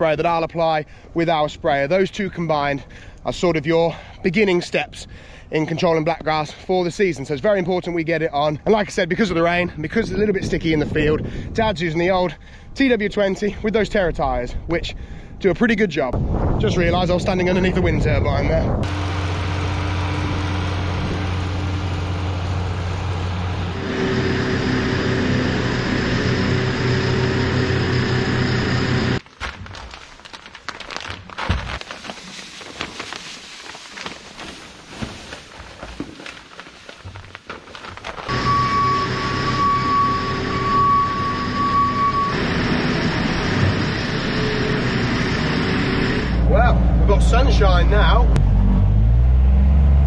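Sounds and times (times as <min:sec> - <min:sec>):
high steady whine: 0:18.6 - 0:29.2, 0:38.3 - 0:48.4
mechanical hum with tones: 0:18.8 - 0:29.2, 0:38.3 - 0:47.1
tractor engine and spreader: 0:18.8 - 0:29.2, 0:38.2 - 0:50.0.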